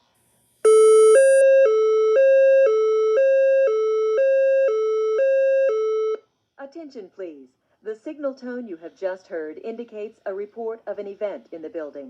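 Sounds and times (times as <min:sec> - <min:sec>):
two-pitch hi-lo alarm tone: 0:00.6 - 0:06.2.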